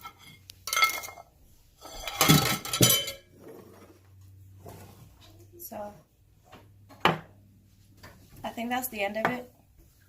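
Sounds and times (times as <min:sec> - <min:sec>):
dishes and cutlery clattering: 0:00.0 - 0:03.8.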